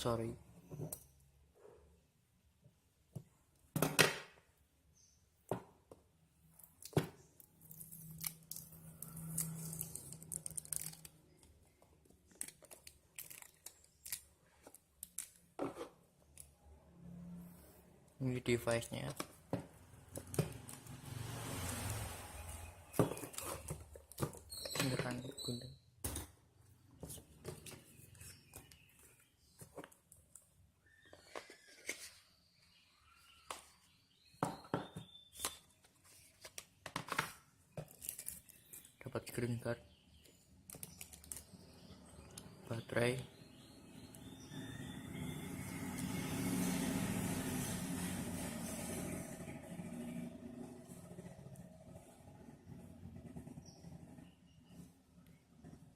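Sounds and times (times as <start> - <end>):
scissors cutting packaging: 7.7 - 11.2
packaging rustling: 12.2 - 15.5.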